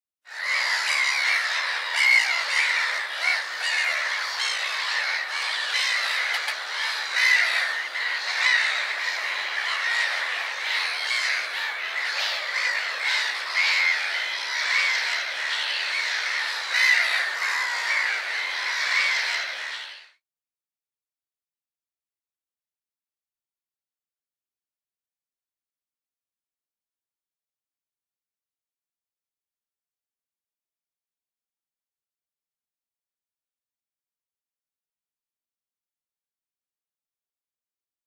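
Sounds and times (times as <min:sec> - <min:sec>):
seagulls squawking: 0:00.3 - 0:20.1.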